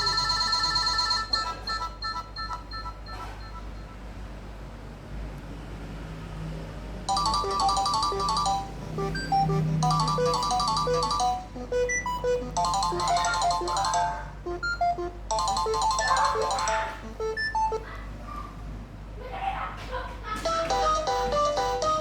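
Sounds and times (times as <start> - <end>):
synthesized ringtone melody: 0.0 - 3.2, 7.1 - 17.8, 20.5 - 22.0.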